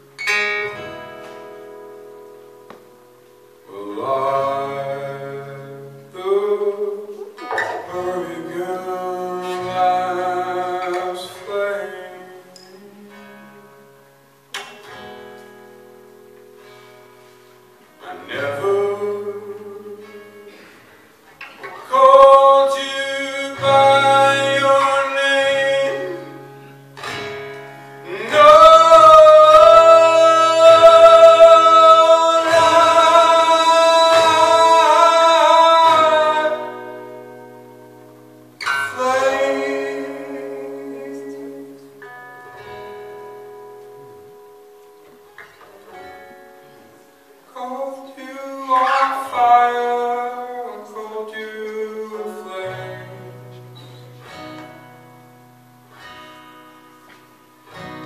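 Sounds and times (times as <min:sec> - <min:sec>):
plucked acoustic guitar: 0:00.0 - 0:58.0
man singing: 0:03.6 - 0:13.8, 0:18.0 - 0:20.8, 0:21.6 - 0:26.6, 0:28.0 - 0:37.9, 0:38.6 - 0:42.1, 0:47.4 - 0:53.6.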